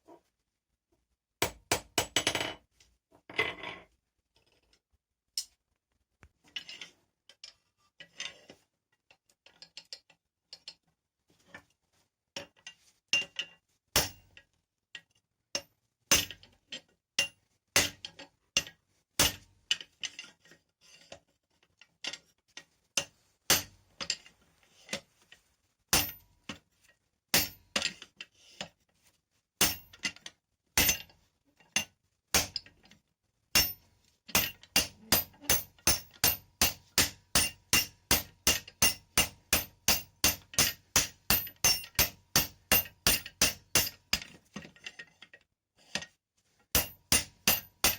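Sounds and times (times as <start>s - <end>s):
hammer striking steel on anvil: 30.8s - 31.1s, 33.6s - 44.1s, 46.8s - 47.9s.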